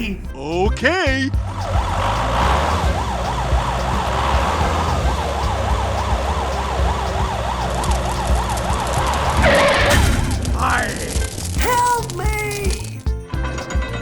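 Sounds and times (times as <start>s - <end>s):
low rumble: 0.0s - 13.0s
siren yelping: 1.3s - 10.0s.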